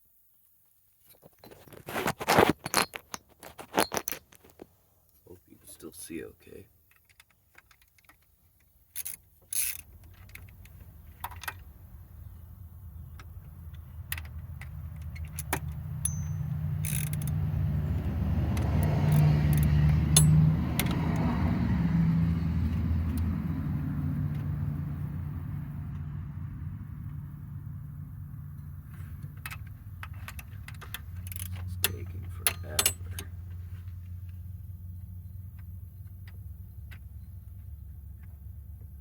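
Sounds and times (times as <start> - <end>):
vehicle passing slowly: 10.6 - 39.0.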